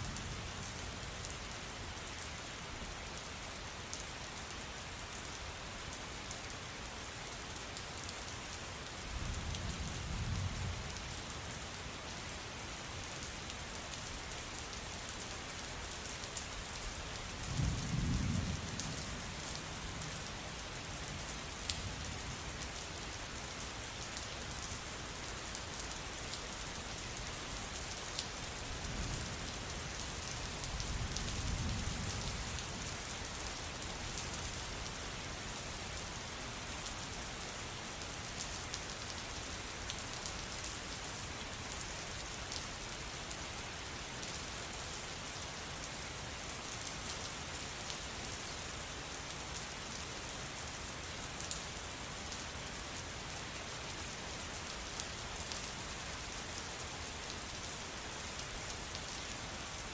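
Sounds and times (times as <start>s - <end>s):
steady rain falling: 0.0s - 59.9s
low rolls of thunder: 17.5s - 19.1s.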